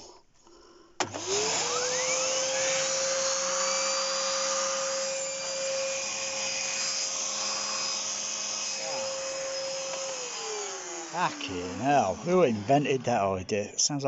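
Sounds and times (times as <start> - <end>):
vacuum cleaner switch click: 1.0 - 1.3
vacuum cleaner motor whining: 1.0 - 13.6.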